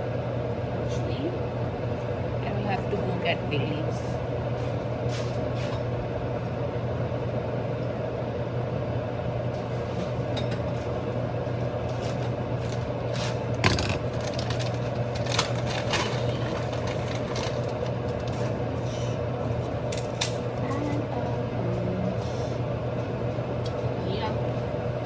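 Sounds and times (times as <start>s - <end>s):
low mechanical hum: 0.0s - 25.0s
kitchen items clicking and knocking: 12.0s - 18.4s.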